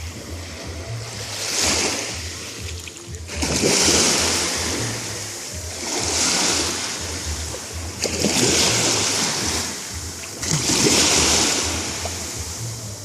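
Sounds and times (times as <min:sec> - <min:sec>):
waves breaking on shore: 0:00.0 - 0:13.0.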